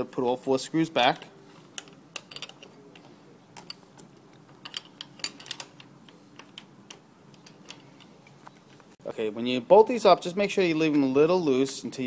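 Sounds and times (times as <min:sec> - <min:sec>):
small metal hardware clicking: 0:01.1 - 0:08.8.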